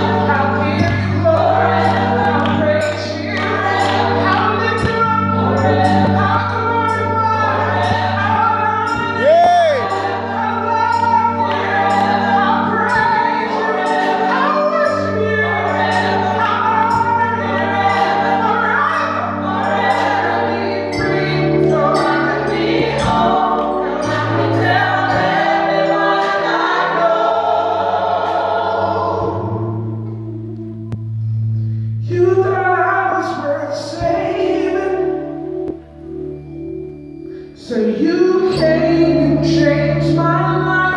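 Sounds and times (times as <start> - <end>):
instrumental backing with beat: 0.0 - 26.8
gospel choir singing: 0.0 - 31.0, 32.0 - 36.3, 37.3 - 40.9.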